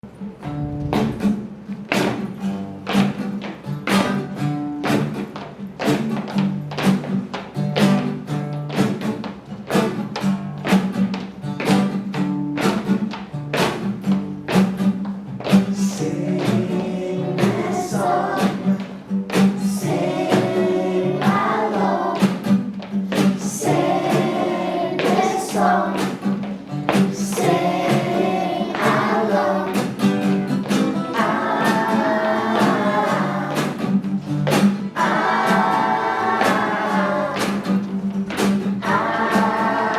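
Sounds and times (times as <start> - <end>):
plucked notes over low drone: 0.4 - 1.4
voices singing: 15.7 - 22.6, 23.3 - 34.0, 34.9 - 37.9, 38.8 - 39.9.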